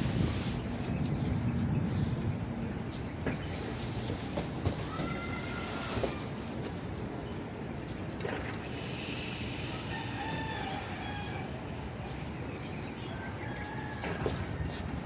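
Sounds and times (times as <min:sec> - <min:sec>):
steady background noise: 0:00.0 - 0:15.0
rooster crowing: 0:09.8 - 0:11.6.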